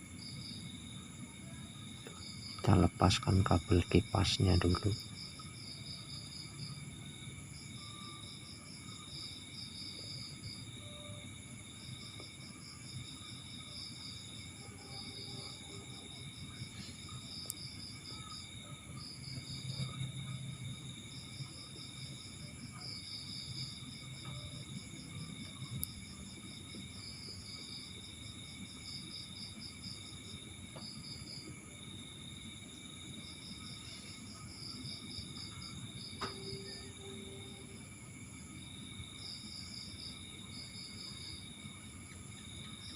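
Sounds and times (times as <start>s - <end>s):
crickets chirping: 0.0s - 42.9s
high-pitched insect tones: 1.4s - 30.0s, 33.2s - 37.9s.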